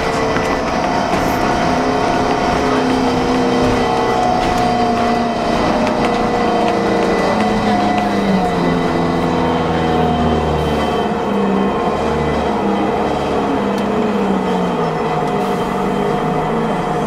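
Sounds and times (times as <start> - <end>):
bus road and drivetrain noise: 0.0 - 17.0
whining tone: 0.0 - 17.0.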